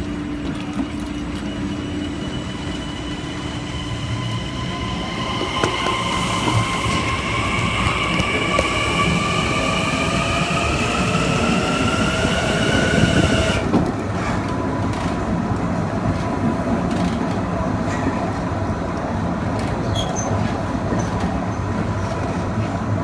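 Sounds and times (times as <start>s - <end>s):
electric train motors whining: 0.6s - 13.7s.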